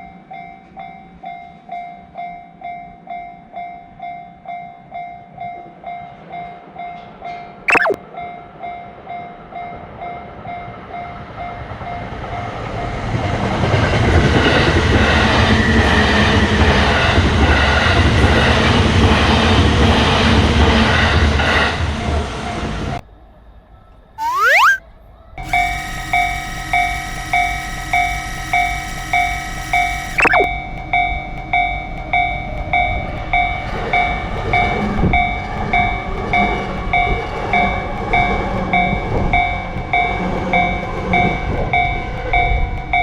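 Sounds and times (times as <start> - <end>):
brief rising tone: 7.7 - 8.0, 24.2 - 24.8, 25.4 - 30.5
sharp brief sound: 24.2 - 24.8.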